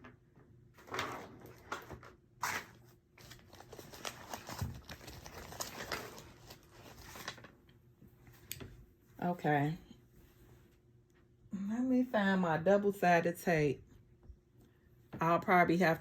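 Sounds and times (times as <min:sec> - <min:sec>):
paper and packaging rustling: 0:00.8 - 0:07.8.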